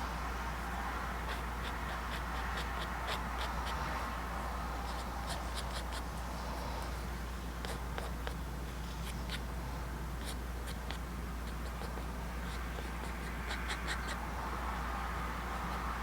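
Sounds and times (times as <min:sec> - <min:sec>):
steady low hum: 0:00.0 - 0:16.0
painting tool scratching paper: 0:01.2 - 0:04.0, 0:04.8 - 0:06.1, 0:10.2 - 0:14.2.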